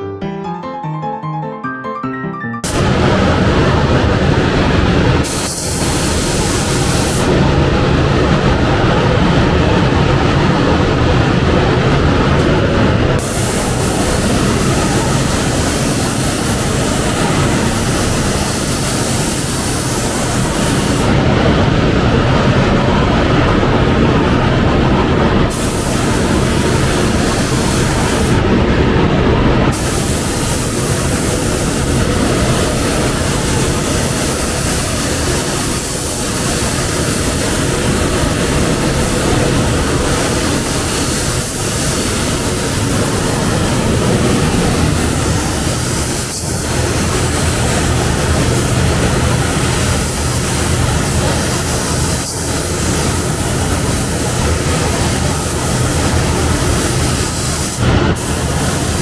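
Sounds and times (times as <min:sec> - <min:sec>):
air spray gun hissing: 0:02.6 - 0:09.2, 0:13.1 - 0:21.2, 0:25.5 - 0:28.5, 0:29.7 - 0:59.0.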